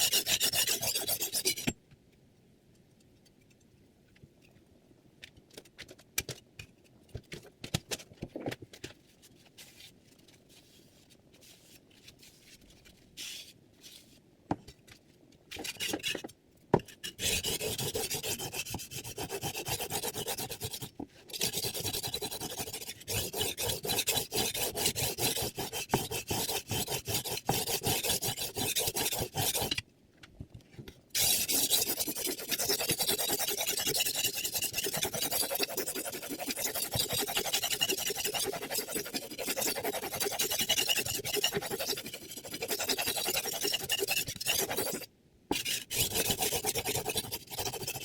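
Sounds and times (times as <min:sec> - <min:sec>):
knife scraping on sharpening plate: 0:00.0 - 0:01.8, 0:31.2 - 0:48.0.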